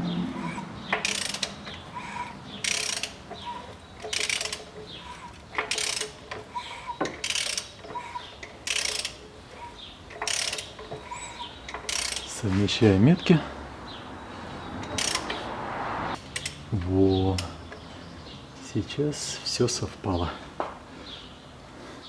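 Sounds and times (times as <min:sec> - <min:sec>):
ratchet wrench clicking: 0:00.4 - 0:12.3, 0:14.8 - 0:15.4, 0:16.2 - 0:16.6.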